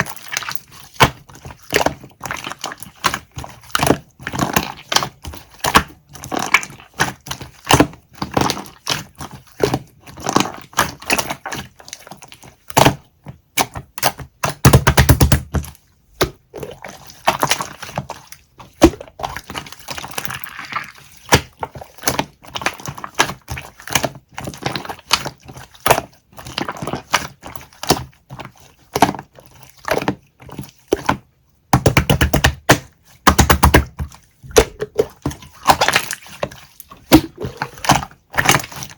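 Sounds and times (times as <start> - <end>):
wet squishing: 0.0 - 38.9.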